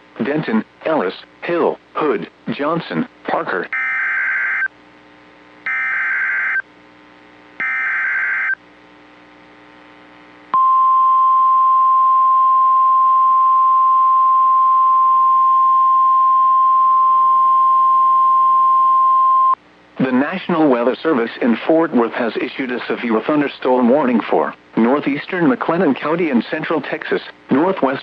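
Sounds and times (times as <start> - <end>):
steady warning alarm tone: 3.7 - 4.7, 5.7 - 6.6, 7.6 - 8.6
warbling data screech: 7.6 - 8.6.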